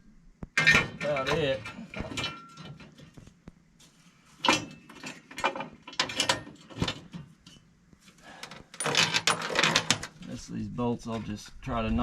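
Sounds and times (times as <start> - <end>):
hand tools clanking on metal: 0.6 - 3.1, 4.4 - 7.6, 8.4 - 10.1.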